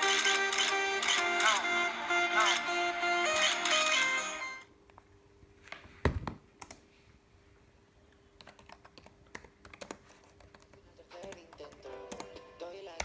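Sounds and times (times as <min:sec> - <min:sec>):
keyboard keys clicking: 0:08.4 - 0:12.4.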